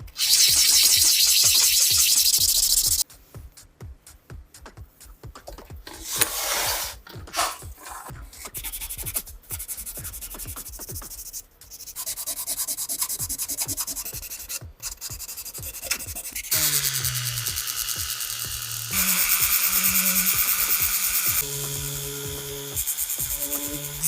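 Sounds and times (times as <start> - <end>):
background music with steady beat: 0.0 - 24.0
abrasive rubbing on metal: 6.0 - 17.9.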